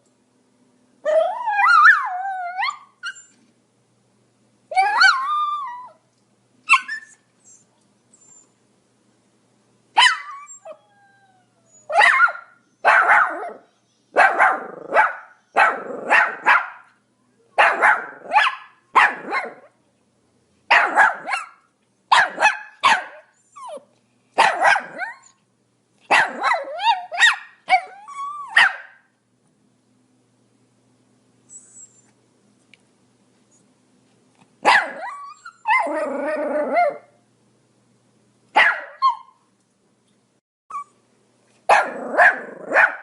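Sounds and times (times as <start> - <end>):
small dog yapping: 4.7 - 6.0, 6.7 - 7.2, 10.0 - 10.8, 11.9 - 13.6, 14.2 - 16.9, 17.6 - 19.7, 20.7 - 23.8, 24.4 - 25.4, 26.1 - 29.0, 34.6 - 37.1, 38.6 - 39.4, 41.7 - 43.0.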